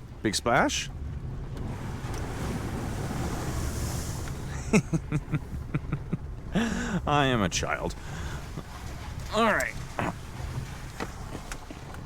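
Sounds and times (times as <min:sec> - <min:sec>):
truck splashing through puddle: 0:01.6 - 0:05.3
man chuckling: 0:04.5 - 0:07.1, 0:11.2 - 0:11.9.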